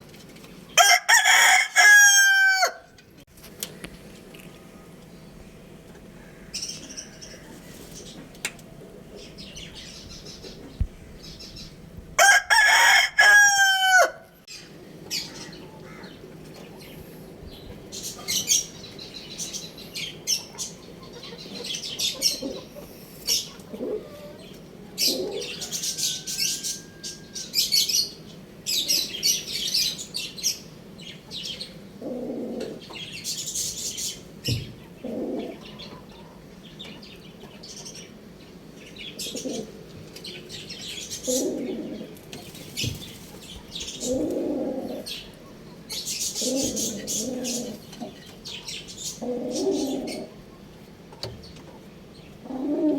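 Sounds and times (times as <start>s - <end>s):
rooster crowing: 0.8s - 3.0s, 12.2s - 14.4s, 25.4s - 27.6s
hens clucking: 20.0s - 27.1s, 31.2s - 33.2s, 41.2s - 52.9s
fowl chirping: 20.1s - 30.6s.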